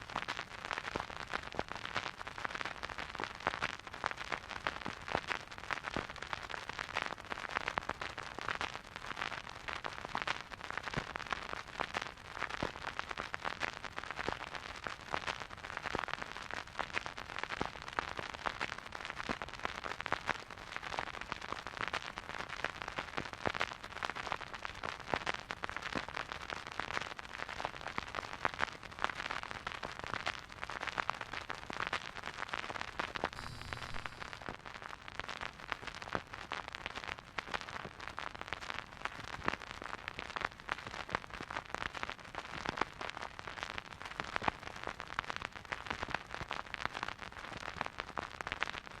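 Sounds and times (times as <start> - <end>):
vinyl crackles and pops: 0.0 - 49.0
vinyl surface hiss: 33.3 - 34.6.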